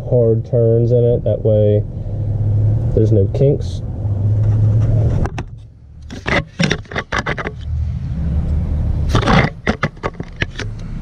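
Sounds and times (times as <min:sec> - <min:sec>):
metallic clicks and scrapes: 0:04.4 - 0:07.8, 0:08.4 - 0:11.0.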